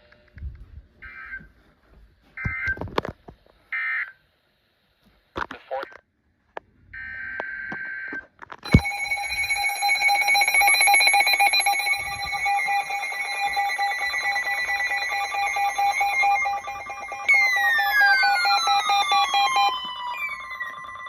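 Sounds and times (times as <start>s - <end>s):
electronic alarm beeping: 7.9s - 21.0s
tone sliding downward: 8.6s - 21.0s
warbling data tones: 8.6s - 21.0s.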